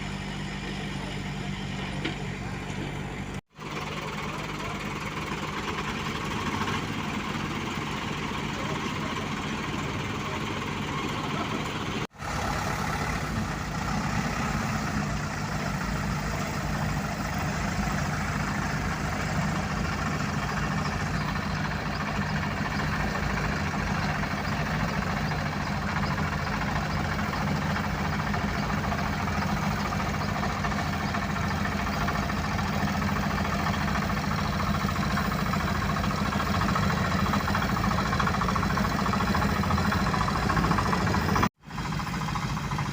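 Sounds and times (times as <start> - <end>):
diesel engines humming: 0.0 - 42.9.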